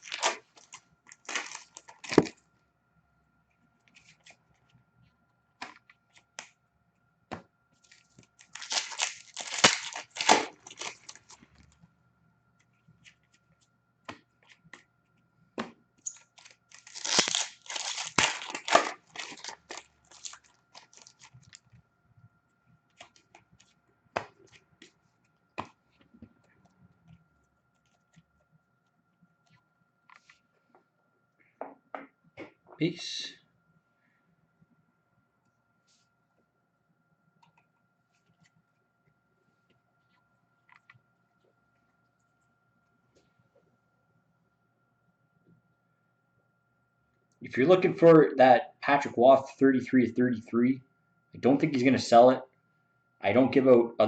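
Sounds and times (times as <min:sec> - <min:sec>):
card pack wrappers tearing: 0:00.0 - 0:02.3, 0:07.9 - 0:11.4, 0:16.0 - 0:21.6
cards being handled: 0:00.0 - 0:02.4, 0:07.8 - 0:11.4, 0:15.6 - 0:21.6.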